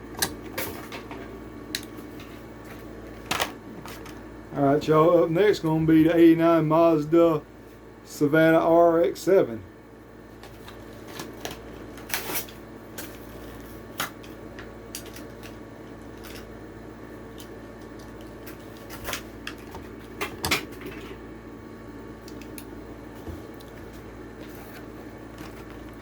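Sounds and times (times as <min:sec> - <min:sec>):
steady low hum: 0:00.0 - 0:26.0
plastic packaging snapping and crinkling: 0:10.4 - 0:16.5, 0:17.3 - 0:21.2.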